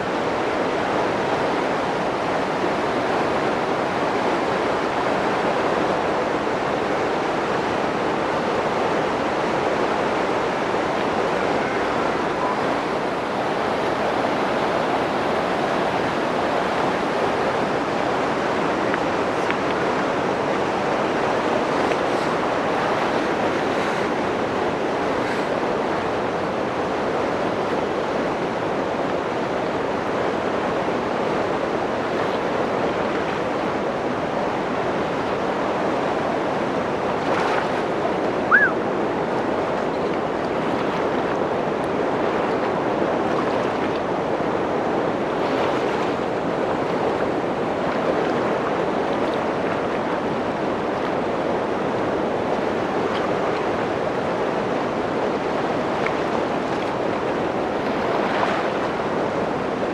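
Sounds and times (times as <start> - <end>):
waterfall rushing: 6.5 - 39.8
short high chirp: 38.5 - 38.8.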